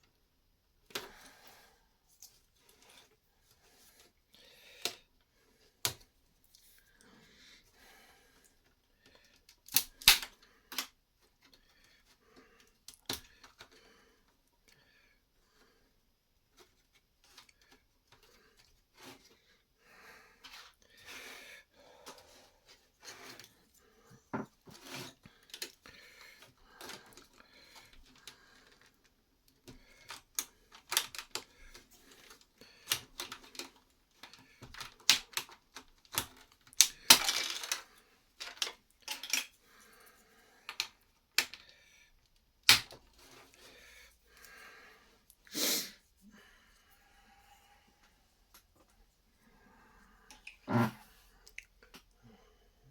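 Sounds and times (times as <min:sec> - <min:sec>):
plastic bricks clicking and rattling: 0:29.7 - 0:39.5.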